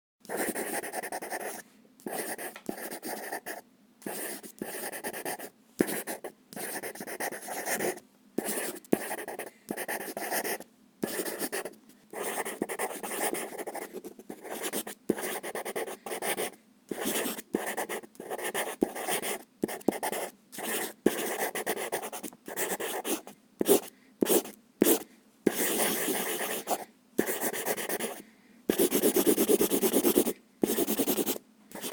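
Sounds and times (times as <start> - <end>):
pencil scratching on paper: 0.3 - 31.9.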